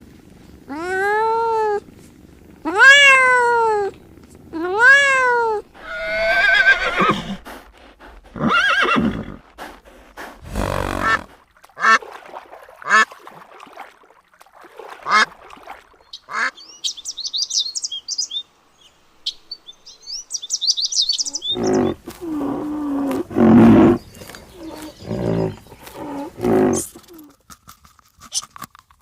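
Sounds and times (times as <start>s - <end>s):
farm animal calls: 16.1s - 16.6s, 20.6s - 27.3s.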